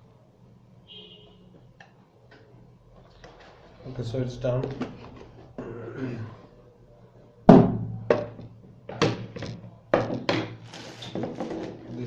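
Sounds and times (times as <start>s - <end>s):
hard objects knocking on tabletop: 7.5s - 10.6s.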